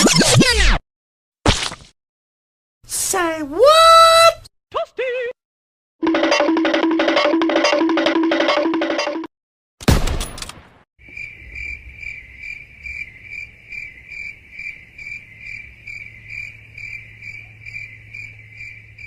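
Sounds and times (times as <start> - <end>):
crickets chirping: 11.0 - 19.0.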